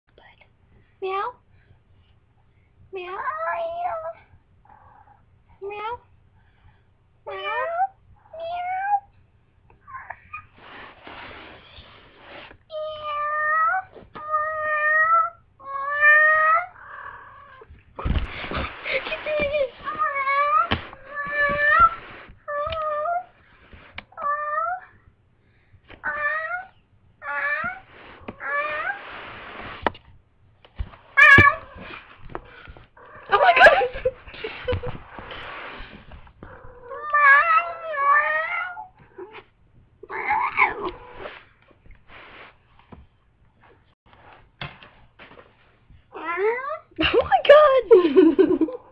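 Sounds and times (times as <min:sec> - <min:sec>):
cat yowling: 0:31.2 - 0:31.8, 0:36.5 - 0:39.4, 0:40.0 - 0:41.3.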